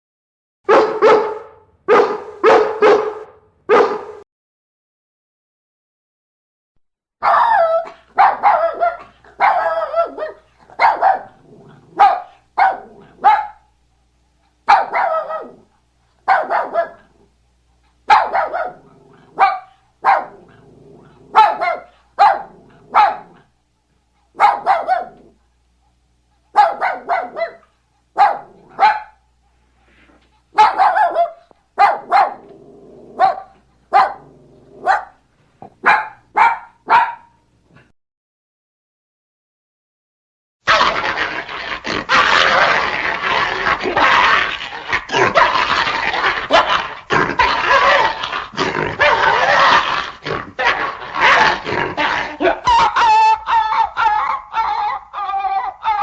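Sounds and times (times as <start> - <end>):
dog barking: 0.7 - 4.2, 7.2 - 11.4, 12.0 - 13.7, 14.7 - 17.1, 18.1 - 18.8, 19.4 - 20.5, 21.3 - 23.4, 24.4 - 25.3, 26.5 - 29.2, 30.6 - 32.5, 33.2 - 37.4, 40.7 - 41.2, 46.5 - 49.9, 50.6 - 51.6.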